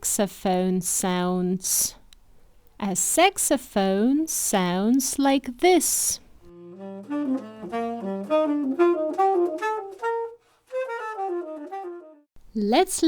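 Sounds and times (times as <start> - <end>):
saxophone jazzy melody: 6.5 - 12.3.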